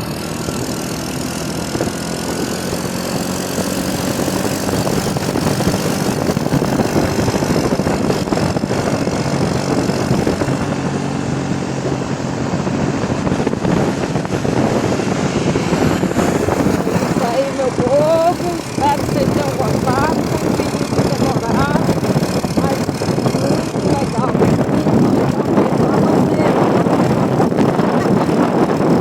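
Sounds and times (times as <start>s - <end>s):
car road and engine noise: 0.0s - 29.0s
wind buffeting microphone: 0.0s - 29.0s.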